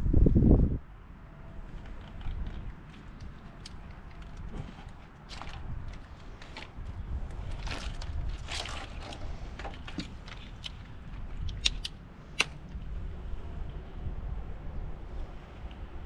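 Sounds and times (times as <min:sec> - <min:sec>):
rustling: 0:01.8 - 0:11.5
sharp metallic clicks: 0:10.2 - 0:12.8.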